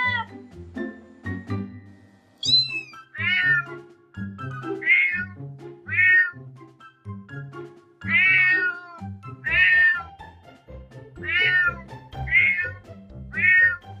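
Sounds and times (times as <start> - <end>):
cat meowing: 0.0 - 0.3, 2.4 - 3.7, 4.8 - 6.4, 8.1 - 10.0, 11.2 - 13.8
music with low sustained notes: 0.0 - 2.4.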